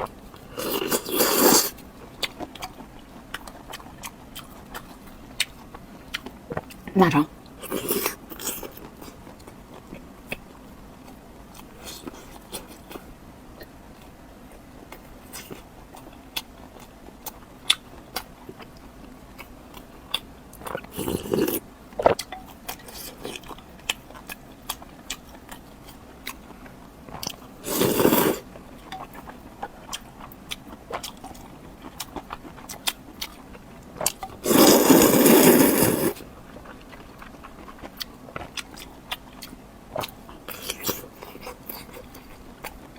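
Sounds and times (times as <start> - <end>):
person chewing and biting: 29.9 - 42.8.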